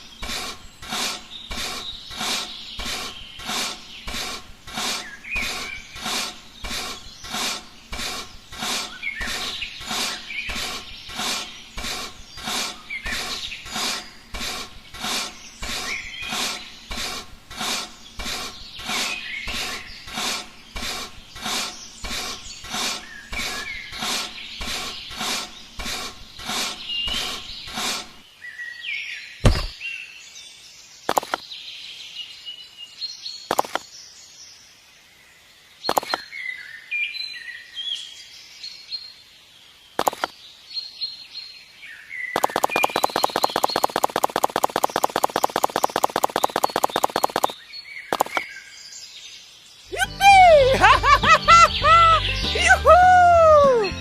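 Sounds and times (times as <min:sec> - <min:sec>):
small birds chirping: 0:00.0 - 0:54.0
sharp clicks: 0:31.1 - 0:31.4, 0:33.5 - 0:33.8, 0:35.9 - 0:36.2, 0:40.0 - 0:40.4, 0:42.4 - 0:48.5.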